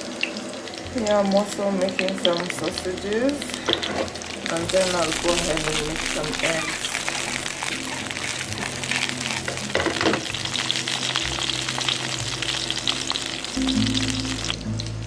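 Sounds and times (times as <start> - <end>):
background music: 0.0 - 15.0
sausages sizzling in a pan: 0.0 - 15.0.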